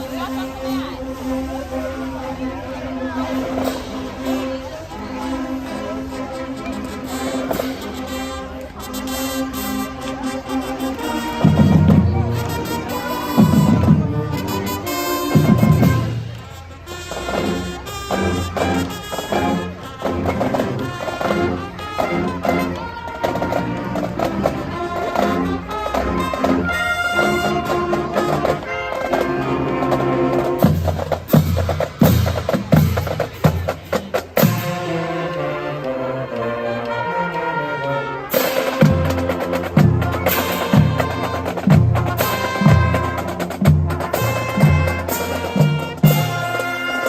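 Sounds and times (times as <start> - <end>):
brass instruments: 0.0 - 47.0
snare drum: 25.2 - 35.0, 38.3 - 47.0.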